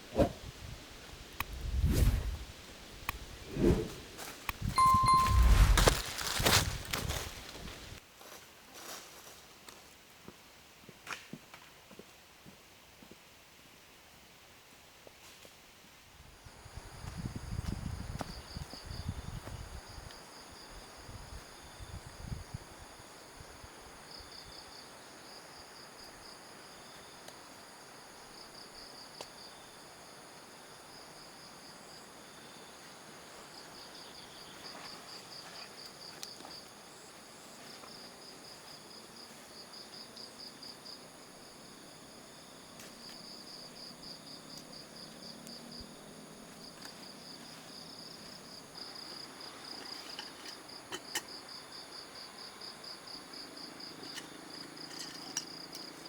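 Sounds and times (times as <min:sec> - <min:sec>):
crickets chirping: 0:16.4 - 0:56.0.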